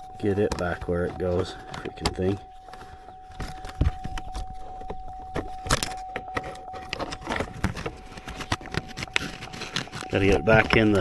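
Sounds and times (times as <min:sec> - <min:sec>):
electronic warning tone: 0:00.0 - 0:11.0.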